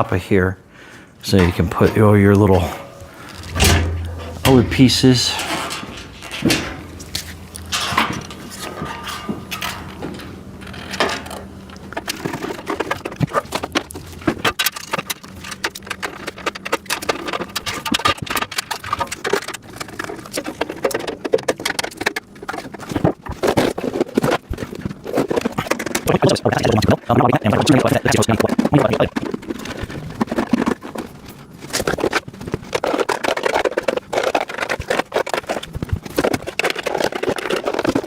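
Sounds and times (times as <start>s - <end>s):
low steady hum: 0.0s - 21.0s
plastic bins clicking and rattling: 1.2s - 38.0s.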